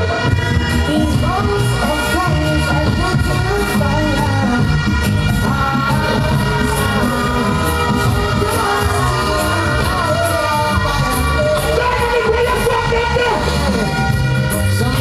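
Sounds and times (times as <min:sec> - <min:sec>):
song with heavy bass and beat: 0:00.0 - 0:15.0.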